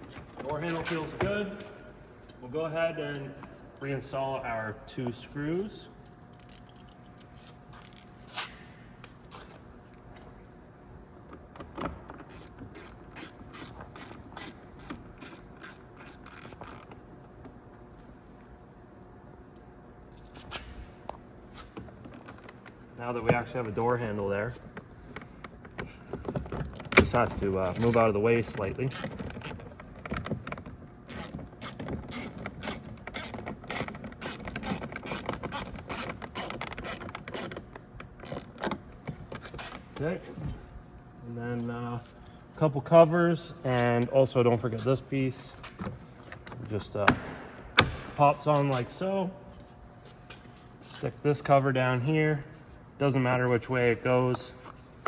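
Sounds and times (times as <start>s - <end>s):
clicking and rattling of parts: 6.1s - 8.2s, 24.6s - 40.8s.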